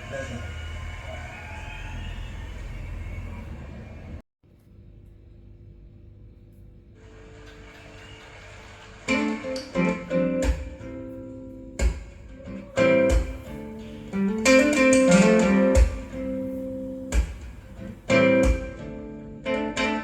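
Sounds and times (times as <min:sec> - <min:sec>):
acoustic guitar strumming: 0:09.1 - 0:20.0.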